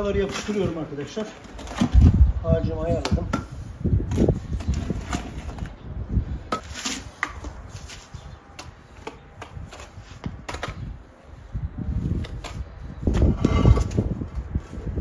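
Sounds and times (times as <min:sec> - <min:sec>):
mortar scraping and knocking: 0:00.2 - 0:02.2, 0:12.2 - 0:14.4.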